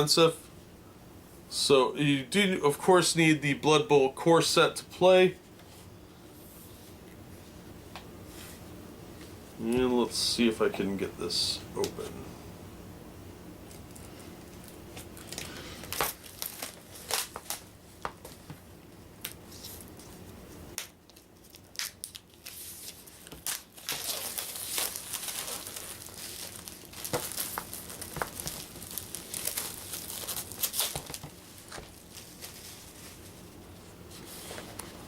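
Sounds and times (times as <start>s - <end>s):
packaging wrapping tearing and crinkling: 14.6s - 17.7s, 20.8s - 33.1s.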